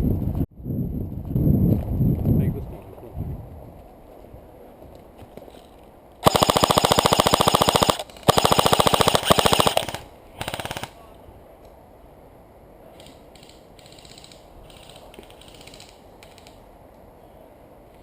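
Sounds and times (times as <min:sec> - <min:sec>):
airsoft rifle firing bursts: 0:06.2 - 0:10.9.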